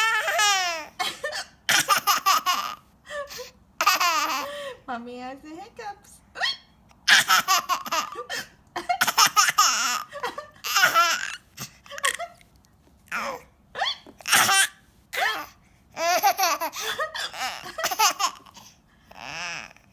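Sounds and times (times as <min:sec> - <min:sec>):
small child laughing: 0:00.0 - 0:04.6, 0:06.4 - 0:12.4, 0:15.4 - 0:18.7
child hiccuping: 0:06.4 - 0:08.0, 0:09.0 - 0:10.0, 0:10.7 - 0:12.4, 0:13.1 - 0:15.6.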